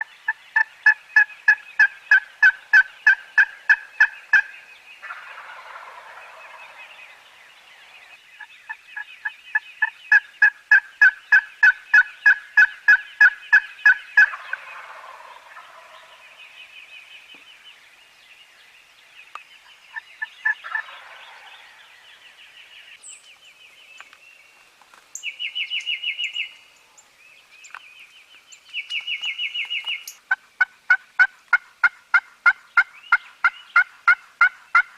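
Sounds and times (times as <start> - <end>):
turkey gobbling: 0.6 - 7.0, 9.8 - 16.4, 19.9 - 21.8, 30.3 - 34.9
turkeys yelping: 0.6 - 7.0, 9.8 - 16.3, 19.9 - 21.8, 29.8 - 34.9.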